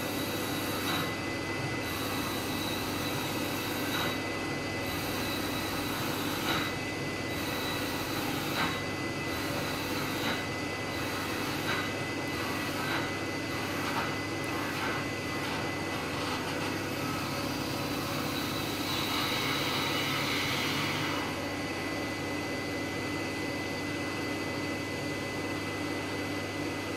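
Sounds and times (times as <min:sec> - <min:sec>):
lathe high whine: 0:00.0 - 0:24.0
cutting tool scraping wood: 0:11.1 - 0:17.3.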